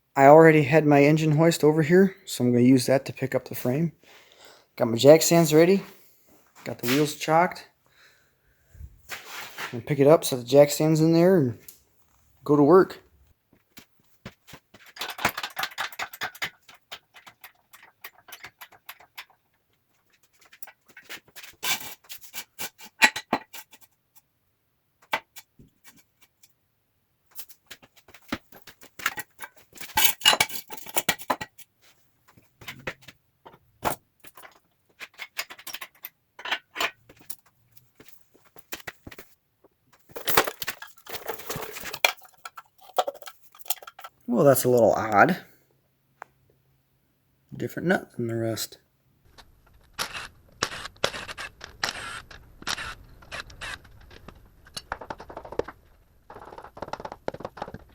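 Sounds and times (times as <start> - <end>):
metal clinking and rattling: 14.7 - 23.9, 28.4 - 31.7, 33.8 - 37.5, 40.0 - 44.2.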